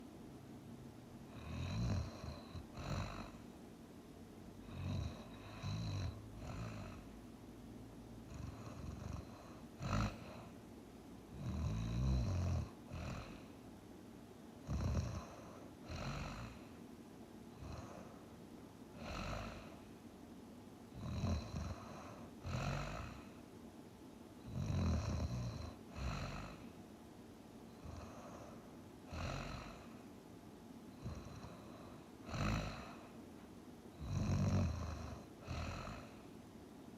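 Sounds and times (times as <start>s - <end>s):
quiet breathing: 1.2s - 13.8s, 14.6s - 20.2s, 20.8s - 23.7s, 24.4s - 27.0s, 27.6s - 36.9s
person snoring: 1.3s - 3.4s, 4.6s - 7.1s, 8.3s - 10.6s, 11.3s - 13.5s, 14.7s - 16.7s, 19.0s - 19.8s, 21.0s - 23.4s, 24.4s - 26.7s, 27.7s - 30.0s, 30.9s - 33.1s, 34.0s - 36.2s.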